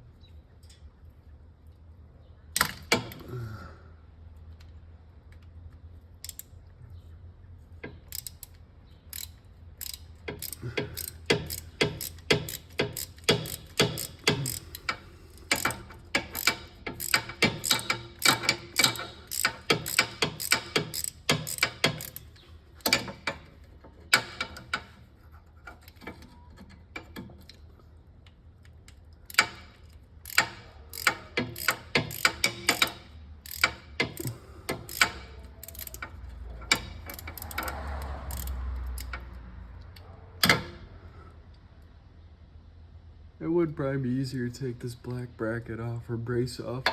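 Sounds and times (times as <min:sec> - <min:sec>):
hand ratchet clicking: 0:06.2 - 0:06.5, 0:07.9 - 0:23.5, 0:29.3 - 0:39.2.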